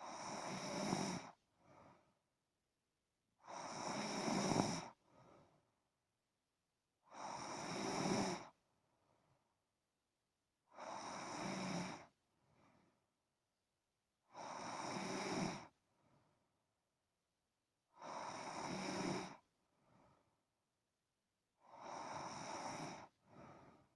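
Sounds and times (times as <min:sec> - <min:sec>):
person snoring: 0:00.0 - 0:01.4, 0:03.4 - 0:05.0, 0:07.1 - 0:08.6, 0:10.7 - 0:12.1, 0:14.4 - 0:15.7, 0:18.0 - 0:19.4, 0:21.7 - 0:23.1
faint breath: 0:00.0 - 0:02.2, 0:04.7 - 0:05.8, 0:11.9 - 0:13.0, 0:19.2 - 0:20.4, 0:21.7 - 0:23.9.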